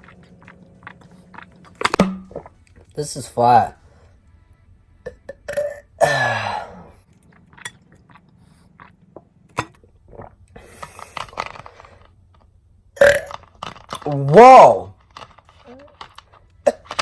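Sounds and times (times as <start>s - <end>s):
person burping: 5.1s - 7.0s, 13.0s - 13.3s.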